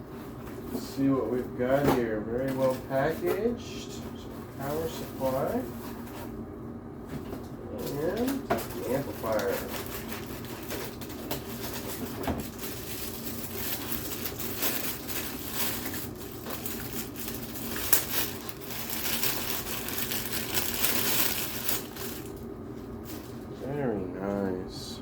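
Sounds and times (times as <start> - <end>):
packaging rustling and crinkling: 7.8 - 23.5
low hum: 12.7 - 25.0.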